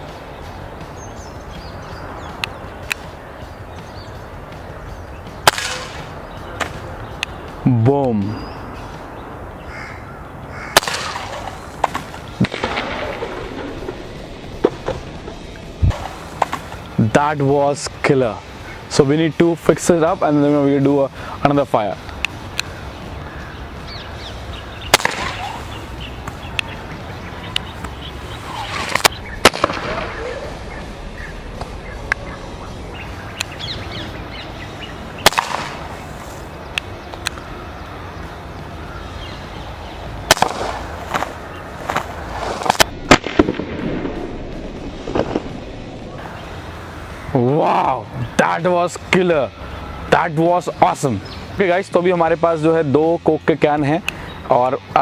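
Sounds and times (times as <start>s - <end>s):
birds calling: 0.0s - 43.0s, 45.2s - 55.0s
air pistol crack: 5.4s - 6.9s, 10.8s - 16.9s, 24.9s - 26.7s, 27.6s - 32.3s, 35.2s - 37.4s, 40.3s - 44.2s.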